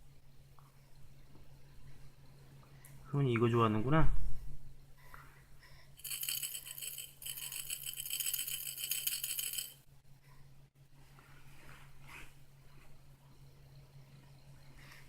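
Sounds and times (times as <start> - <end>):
toy rattle shaken rapidly: 6.0 - 9.8.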